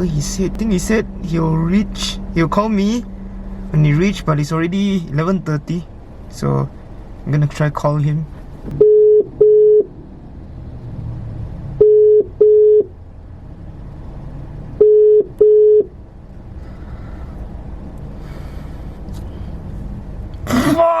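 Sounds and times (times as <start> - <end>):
telephone ringback tone: 8.8 - 9.9, 11.8 - 12.9, 14.8 - 15.9.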